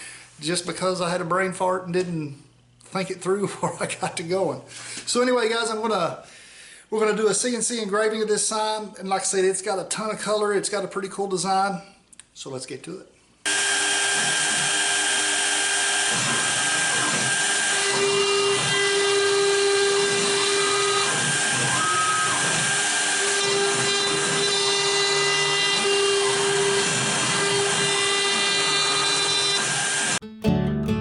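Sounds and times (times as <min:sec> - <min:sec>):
router spindle whining: 0:13.5 - 0:30.2.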